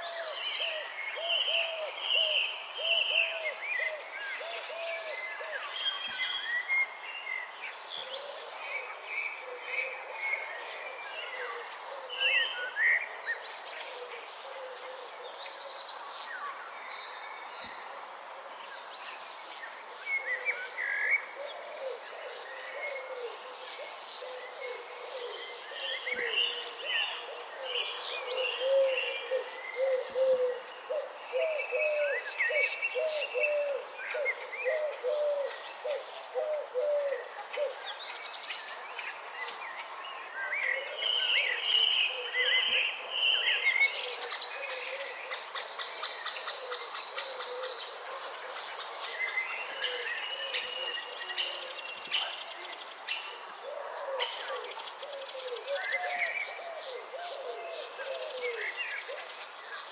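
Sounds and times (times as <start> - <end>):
high-pitched insect drone: 8.6 - 53.1.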